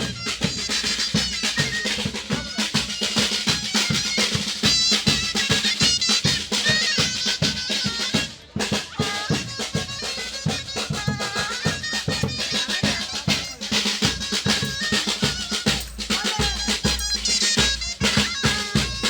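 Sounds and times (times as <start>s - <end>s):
fast busy drumming: 0.0s - 19.0s.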